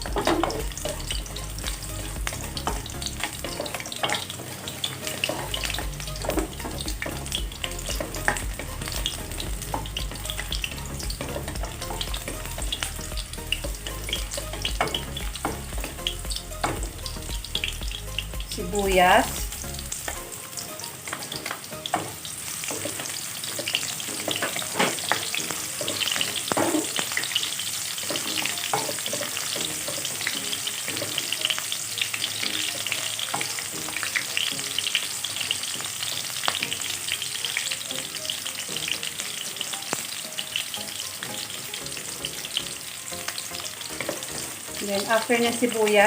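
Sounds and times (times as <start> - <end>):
garlic and onion sizzling in oil: 0.0 - 46.0.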